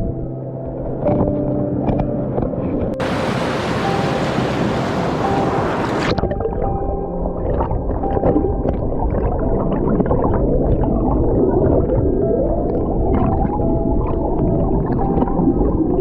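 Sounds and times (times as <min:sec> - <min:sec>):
underwater gurgling and churning: 0:00.0 - 0:16.0
rushing stream water: 0:02.9 - 0:12.1.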